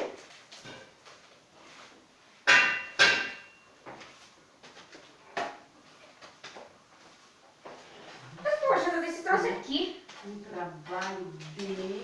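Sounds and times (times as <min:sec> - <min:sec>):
sharp knocks of hard object: 0:02.4 - 0:03.5.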